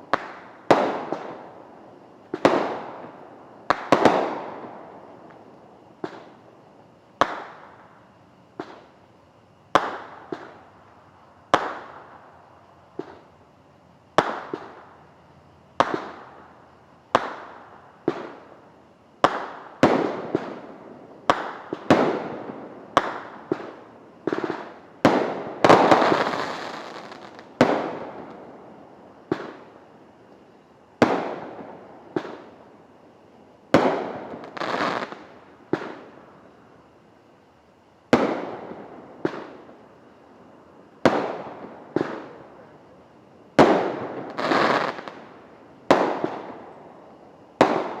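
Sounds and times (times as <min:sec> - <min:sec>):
fireworks crackle: 0:22.8 - 0:28.4, 0:33.7 - 0:36.6, 0:43.5 - 0:46.7.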